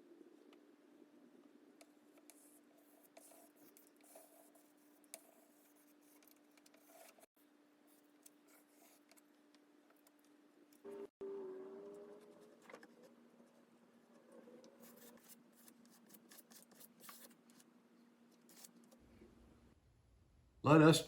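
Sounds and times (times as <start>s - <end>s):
faint ticks and scratches: 1.8s - 10.9s.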